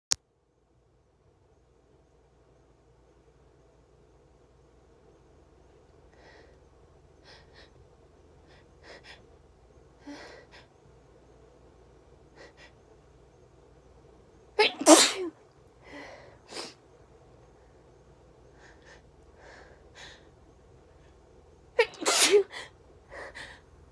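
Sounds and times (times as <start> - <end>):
person sneezing: 14.6 - 15.3, 21.8 - 22.6.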